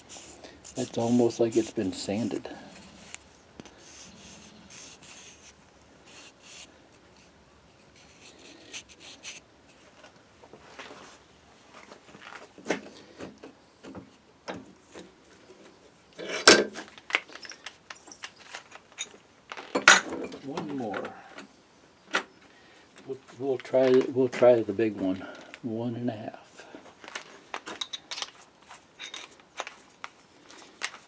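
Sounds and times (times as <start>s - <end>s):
wood and tools rubbing: 0.0s - 10.0s.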